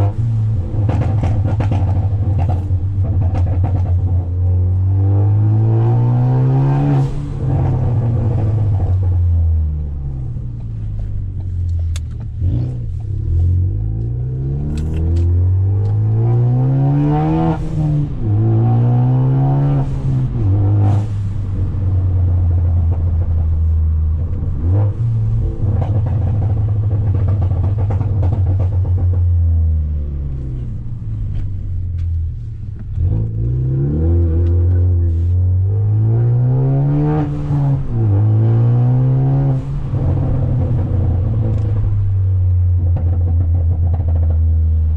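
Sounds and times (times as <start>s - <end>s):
exhaust cracks: 0.0s - 4.8s, 10.3s - 16.6s, 19.8s - 36.0s, 39.0s - 44.9s
car engine revving through gears: 0.0s - 44.9s.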